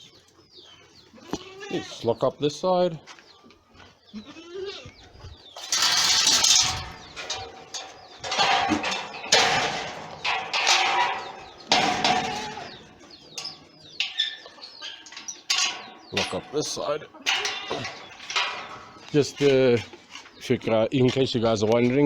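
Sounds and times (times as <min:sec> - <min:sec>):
goats bleating: 0:01.1 - 0:02.0, 0:04.1 - 0:04.9.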